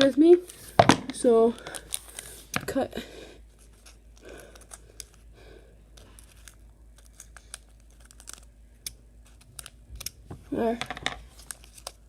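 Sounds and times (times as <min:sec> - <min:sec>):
scissors snipping wrapper: 0:06.0 - 0:10.2.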